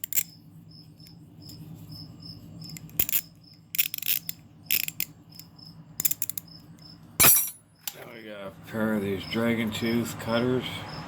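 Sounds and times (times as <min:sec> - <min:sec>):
ratchet clicking: 0:02.8 - 0:06.5.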